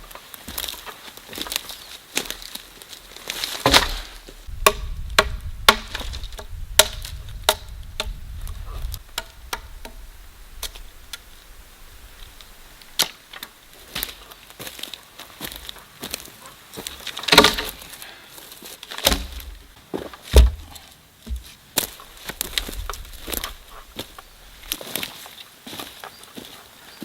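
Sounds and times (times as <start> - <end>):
tool striking wood: 3.6 - 8.2, 19.0 - 19.7, 20.3 - 21.6
low rumble: 4.5 - 11.1.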